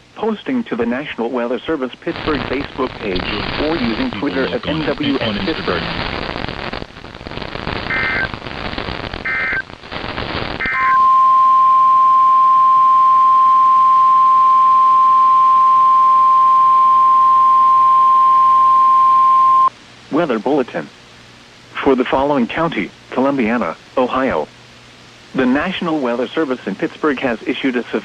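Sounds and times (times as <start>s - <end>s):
radio static: 0.5s - 20.9s, 21.7s - 24.5s, 25.3s - 28.0s
warbling data bursts: 2.3s - 6.8s.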